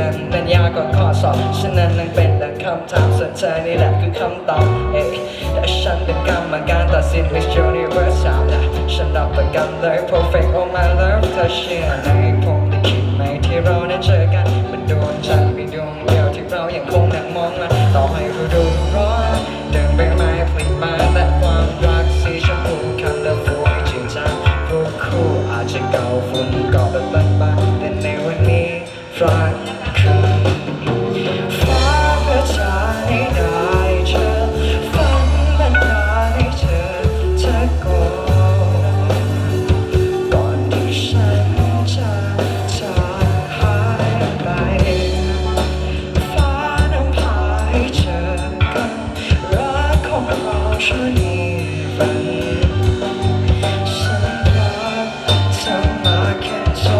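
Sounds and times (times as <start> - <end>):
drum strikes: 29.3 - 56.9
marching band playing: 29.4 - 56.9.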